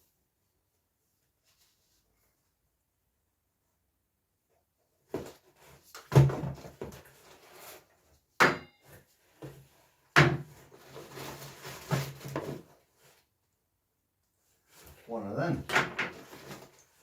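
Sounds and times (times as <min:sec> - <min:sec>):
rustling: 0:10.6 - 0:13.3, 0:16.1 - 0:17.0.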